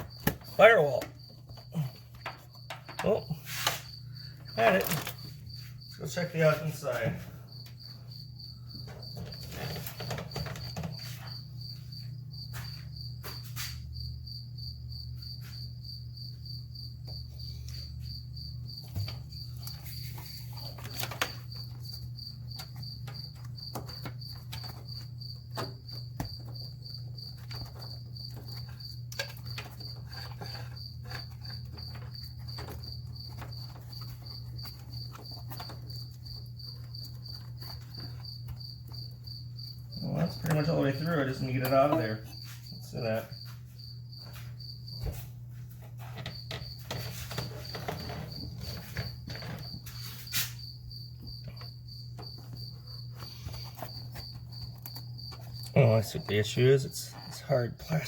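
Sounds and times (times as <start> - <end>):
wiring harness clicks and knocks: 0.0 - 3.8, 18.8 - 42.5
crickets chirping: 0.0 - 58.0.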